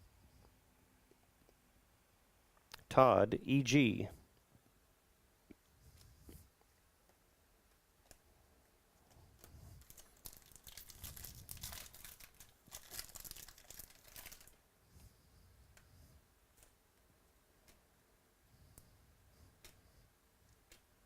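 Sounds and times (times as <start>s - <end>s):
wrapper tearing and crinkling: 9.8s - 14.6s.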